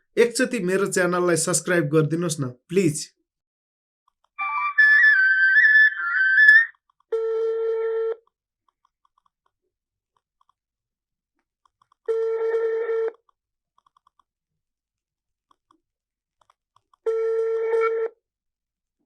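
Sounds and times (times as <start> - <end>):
electronic phone jingle: 4.4 - 6.7
phone ringing tone: 4.4 - 8.2.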